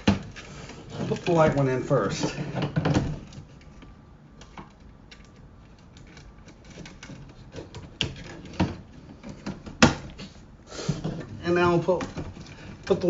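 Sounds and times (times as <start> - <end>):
plastic clicking and rattling: 2.6 - 10.2.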